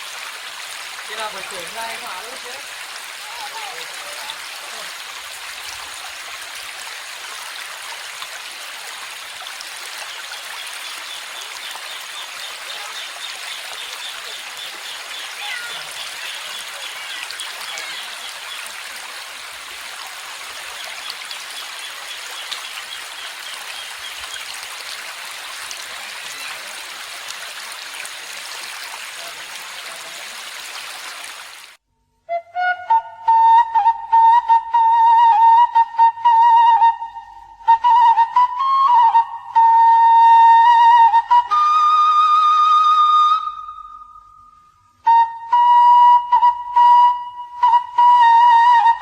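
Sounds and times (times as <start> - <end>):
stream water rushing: 0.0 - 31.8.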